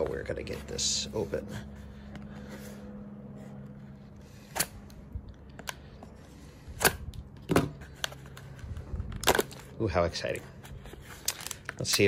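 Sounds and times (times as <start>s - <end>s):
plastic packaging clicks and snaps: 6.8s - 9.8s, 11.2s - 12.0s.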